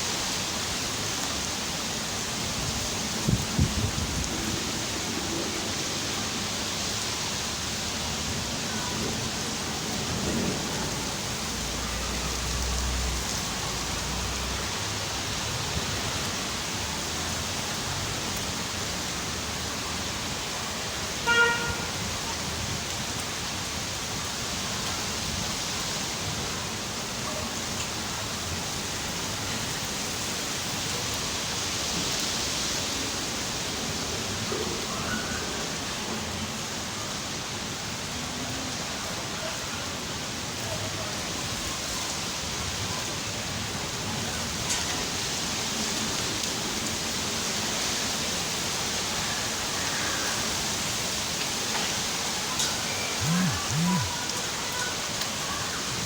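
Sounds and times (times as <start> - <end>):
steady rainfall: 0.0 - 56.0
horn toot: 53.2 - 54.2.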